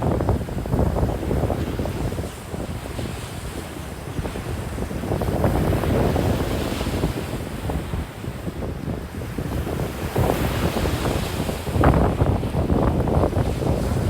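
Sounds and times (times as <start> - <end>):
ocean surf breaking on beach: 0.0 - 14.0
wind buffeting microphone: 0.0 - 14.0.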